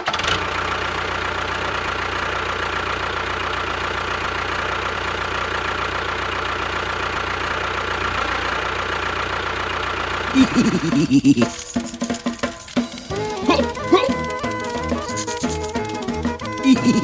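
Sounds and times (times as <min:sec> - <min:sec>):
small motor whining: 0:11.5 - 0:17.0.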